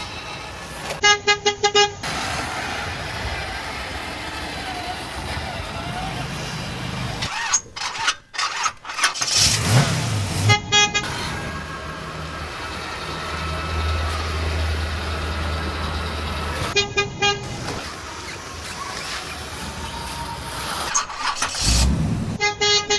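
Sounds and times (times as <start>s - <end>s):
car horn short toots: 1.0s - 2.0s, 10.4s - 11.4s, 16.6s - 17.6s, 22.4s - 22.9s
low engine-like hum: 10.3s - 20.9s.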